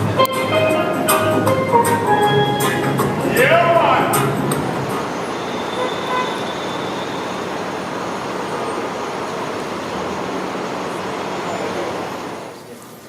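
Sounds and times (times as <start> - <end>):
vehicle rumbling hiss: 2.6 - 13.0.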